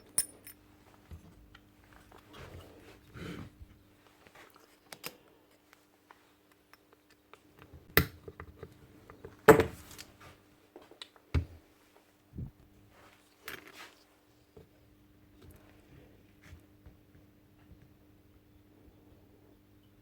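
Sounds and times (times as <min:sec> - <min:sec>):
metal tools clinking on workbench: 0:00.0 - 0:00.6
faint steady hum: 0:00.0 - 0:20.0.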